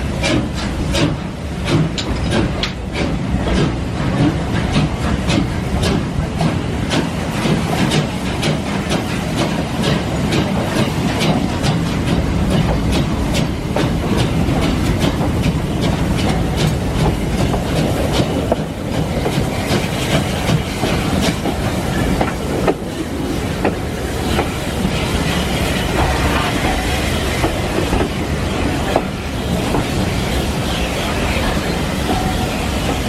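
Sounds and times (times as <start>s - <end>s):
railway carriage rumbling: 0.0s - 33.0s
wheels clicking over rail joints: 0.2s - 25.0s.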